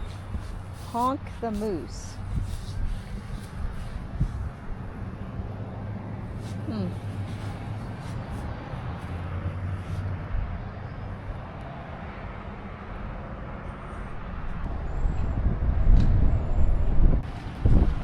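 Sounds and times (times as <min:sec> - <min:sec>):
vehicle engine humming: 0:00.0 - 0:18.0
wind rumble on microphone: 0:00.0 - 0:18.0.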